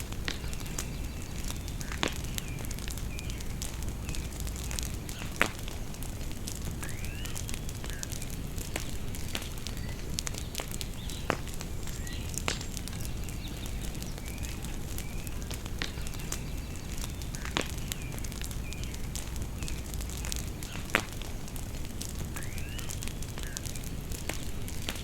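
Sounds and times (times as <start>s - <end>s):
birds chirping: 0.0s - 25.0s
bonfire crackling and popping: 0.0s - 25.0s.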